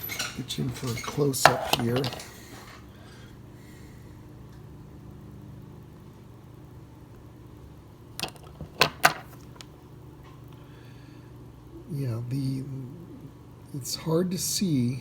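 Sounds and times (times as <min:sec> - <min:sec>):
low mechanical hum: 0:00.0 - 0:15.0
clicks and knocks handling saw: 0:00.1 - 0:02.3.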